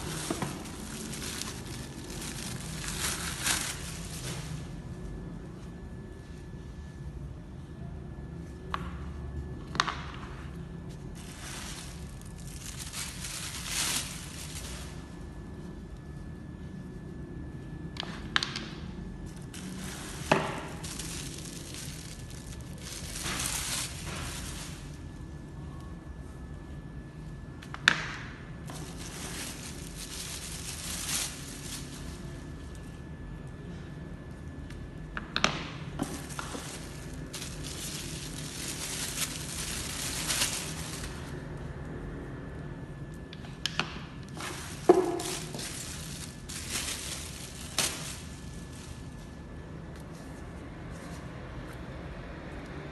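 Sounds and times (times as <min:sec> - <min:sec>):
handling rustling: 0:00.0 - 0:04.8, 0:10.9 - 0:15.2, 0:19.3 - 0:25.3, 0:28.7 - 0:32.8, 0:36.0 - 0:41.4, 0:44.3 - 0:49.3
plastic packaging crinkling: 0:00.0 - 0:05.1, 0:10.9 - 0:15.9, 0:19.2 - 0:25.9, 0:27.6 - 0:33.6, 0:35.7 - 0:42.0, 0:44.2 - 0:49.4
steady low hum: 0:00.0 - 0:52.9.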